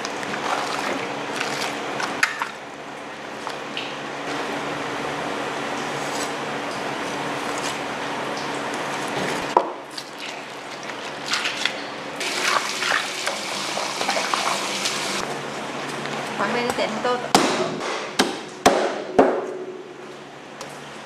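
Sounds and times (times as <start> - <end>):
running water: 10.2 - 15.2.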